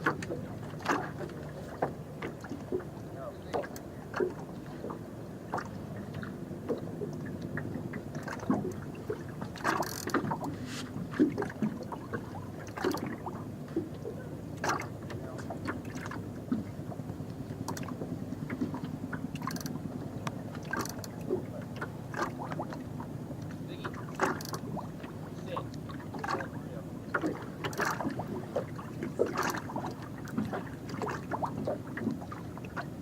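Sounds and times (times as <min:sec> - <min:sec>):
steady low hum: 0:00.0 - 0:33.0
water lapping against boat hull: 0:00.0 - 0:33.0.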